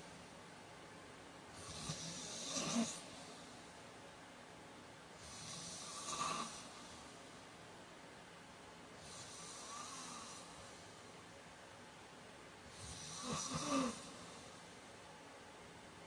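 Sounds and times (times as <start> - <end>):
man snoring: 1.5 - 3.2, 5.2 - 6.9, 9.0 - 10.6, 12.7 - 14.4.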